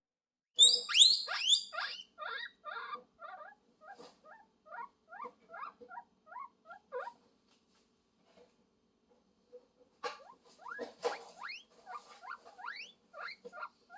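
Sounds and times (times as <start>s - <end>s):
guinea pig squealing: 0.6s - 7.2s, 10.0s - 13.9s.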